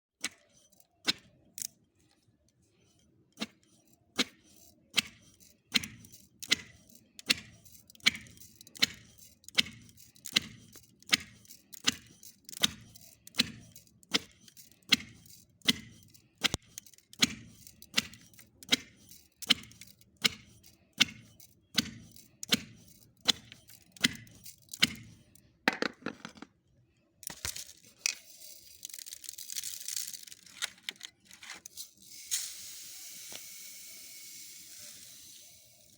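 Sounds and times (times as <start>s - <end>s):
regular knocking strokes: 0.2s - 26.6s.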